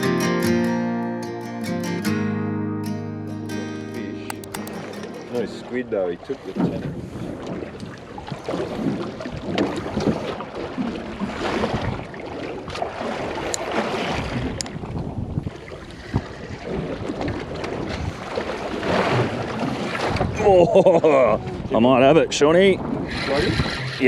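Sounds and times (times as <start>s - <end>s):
water washing against hull: 4.6s - 24.0s
wind buffeting microphone: 5.3s - 24.0s.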